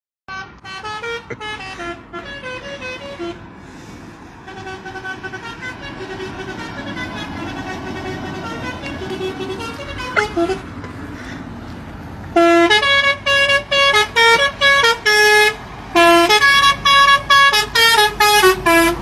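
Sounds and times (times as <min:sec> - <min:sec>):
musical truck horn: 0:00.3 - 0:10.9, 0:12.3 - 0:19.0.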